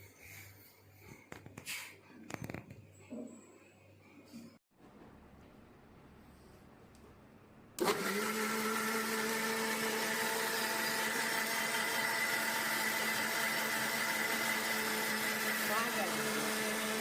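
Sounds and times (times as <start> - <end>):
mixer grinder motor running: 7.8 - 17.0.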